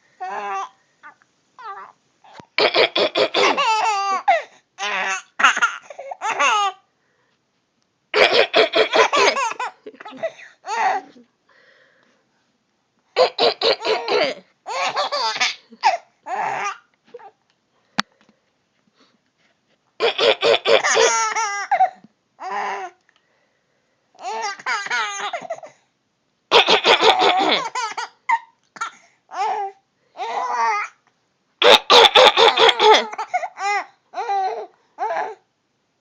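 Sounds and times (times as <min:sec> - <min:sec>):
young child laughing: 0:08.2 - 0:11.2, 0:26.5 - 0:28.2, 0:31.6 - 0:33.3.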